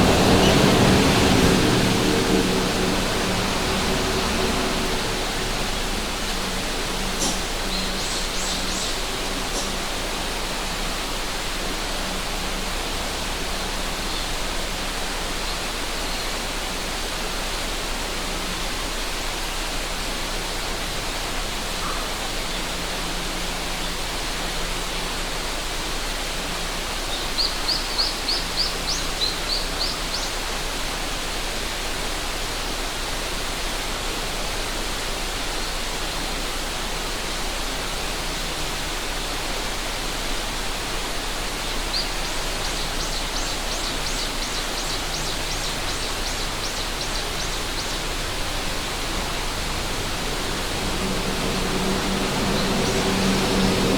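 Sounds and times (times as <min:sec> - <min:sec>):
river rushing: 0:00.0 - 0:53.9
bird chirping: 0:41.9 - 0:53.6.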